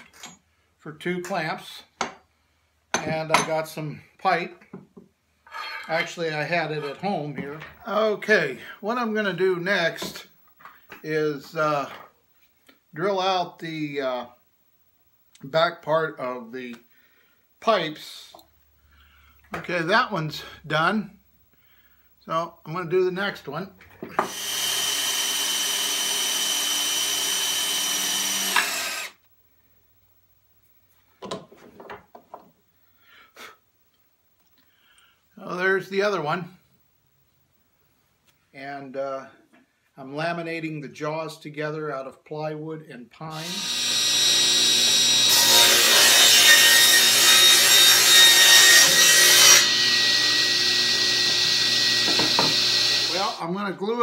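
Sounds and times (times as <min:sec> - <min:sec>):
electric saw cutting wood: 0:24.2 - 0:29.2, 0:43.4 - 0:53.4
power drill drilling: 0:24.2 - 0:29.2, 0:48.8 - 0:53.4.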